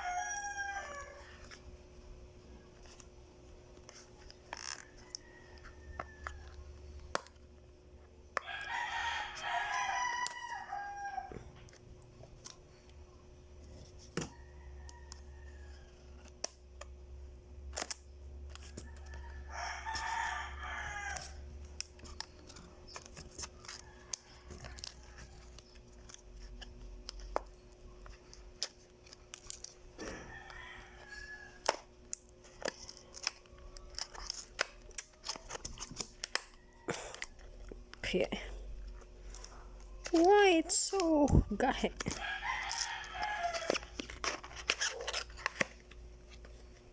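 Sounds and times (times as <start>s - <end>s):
rooster crowing: 0.0s - 1.6s, 4.5s - 6.8s, 8.4s - 11.6s, 14.3s - 16.2s, 18.6s - 21.6s, 23.6s - 25.7s, 30.0s - 31.9s, 42.0s - 45.2s
packaging clicking and tapping: 17.6s - 46.9s.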